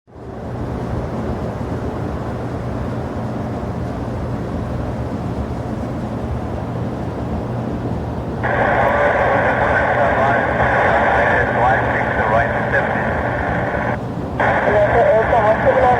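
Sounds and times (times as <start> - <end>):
aircraft engine rumble: 0.4 - 15.9
faint hum: 8.3 - 15.9
air traffic control radio: 8.4 - 15.9.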